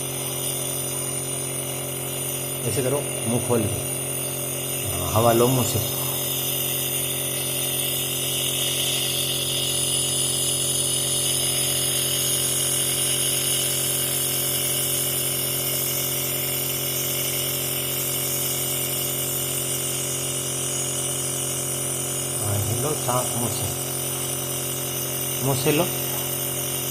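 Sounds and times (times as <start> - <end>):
compressor motor hum: 0.0 - 26.9
high hiss: 22.4 - 24.3.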